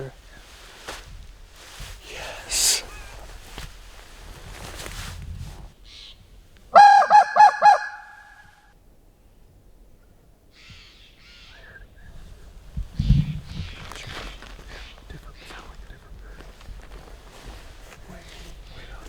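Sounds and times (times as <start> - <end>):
raspy turkey call: 5.9 - 8.7
faint distant calls: 10.0 - 19.0.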